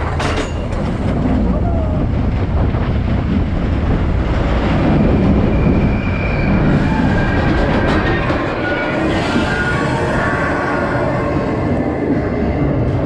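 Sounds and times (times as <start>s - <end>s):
moving vehicle rumbling and rattling: 0.0s - 13.0s.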